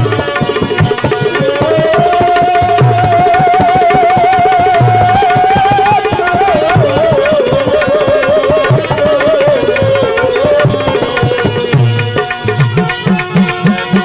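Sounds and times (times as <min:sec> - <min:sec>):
sharp percussion clicks: 0:00.0 - 0:14.0
wavering devotional melody: 0:00.0 - 0:14.0.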